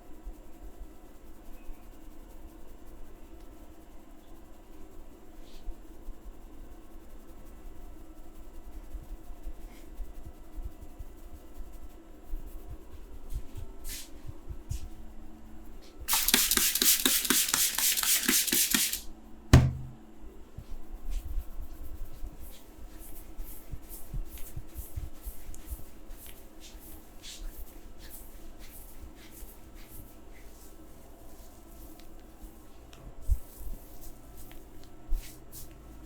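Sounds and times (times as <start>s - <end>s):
hands rubbing strokes: 8.3s - 15.0s, 15.6s - 19.9s, 20.6s - 36.0s.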